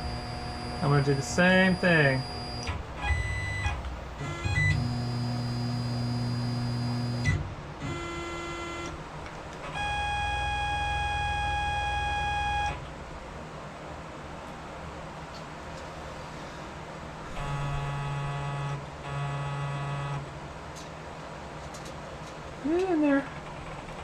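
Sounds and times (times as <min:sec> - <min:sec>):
lathe drive motors whining: 0:00.0 - 0:03.6, 0:17.3 - 0:20.2.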